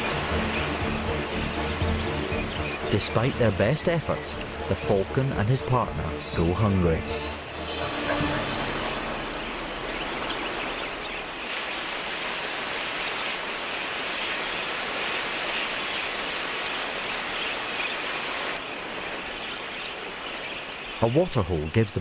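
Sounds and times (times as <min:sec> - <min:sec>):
flock of budgerigars chattering: 0:00.0 - 0:08.0, 0:09.4 - 0:22.0.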